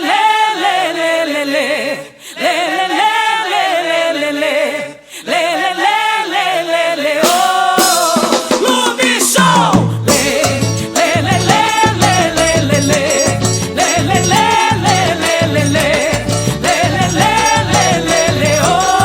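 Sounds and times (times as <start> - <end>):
voices singing unaccompanied: 0.0 - 19.0.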